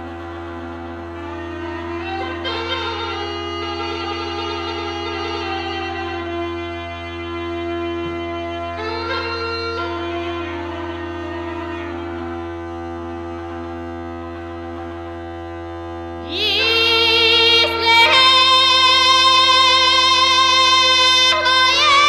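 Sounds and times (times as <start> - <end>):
music of sustained notes: 0.0 - 22.0
melody with strong vibrato: 16.2 - 22.0.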